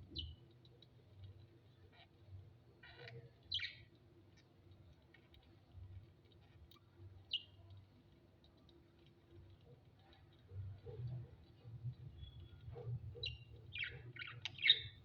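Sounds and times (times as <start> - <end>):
small bird chirping: 0.1 - 0.4, 2.8 - 3.9, 6.7 - 7.7, 12.1 - 15.0.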